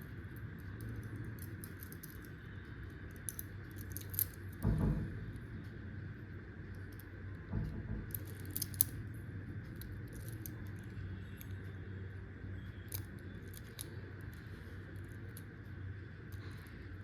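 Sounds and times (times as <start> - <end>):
steady low hum: 0.0 - 17.0
wristwatch and packaging clicking: 0.6 - 2.4, 3.1 - 4.6, 8.1 - 9.0, 9.8 - 11.5, 12.7 - 14.4.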